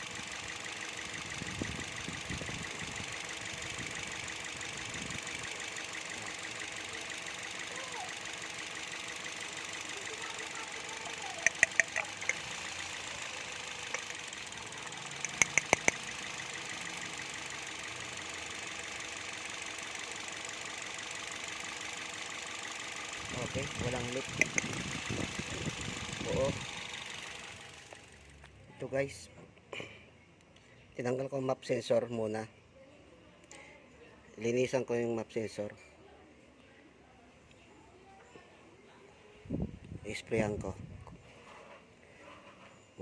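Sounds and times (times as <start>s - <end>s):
car engine idling: 0.0s - 29.1s
sharp clicks: 0.6s - 18.2s, 23.9s - 25.8s.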